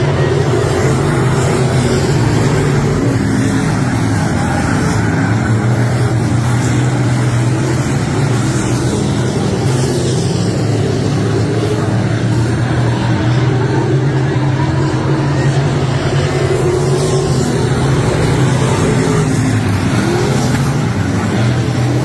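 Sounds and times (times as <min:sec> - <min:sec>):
race car engine running hard: 0:00.0 - 0:22.0.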